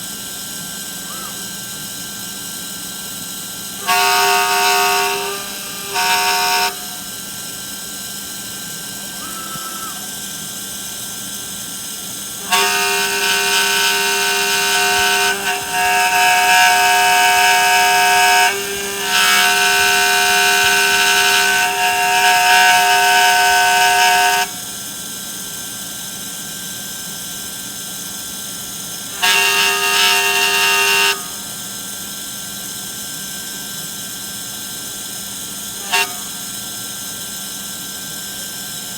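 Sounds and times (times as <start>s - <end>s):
steady background hum: 0.0s - 38.9s
machine motors whining: 0.1s - 26.3s, 28.6s - 31.9s.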